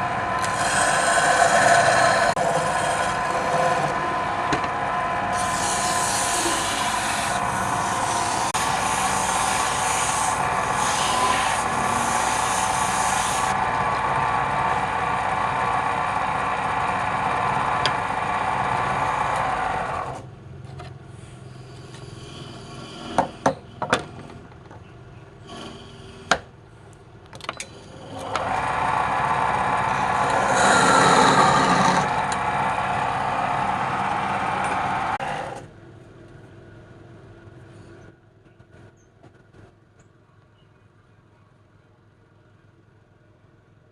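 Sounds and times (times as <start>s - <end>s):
wood lathe cutting: 0.0s - 20.2s, 27.9s - 35.6s.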